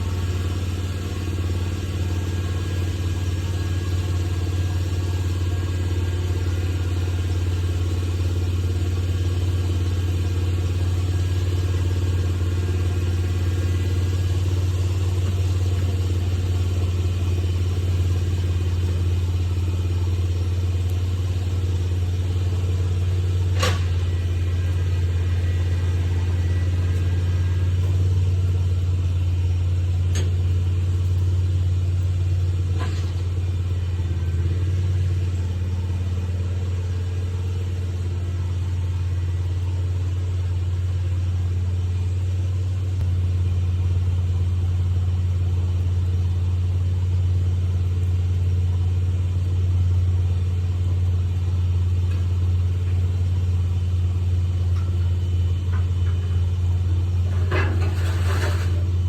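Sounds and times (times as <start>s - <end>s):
vehicle engine droning: 0.0s - 59.0s.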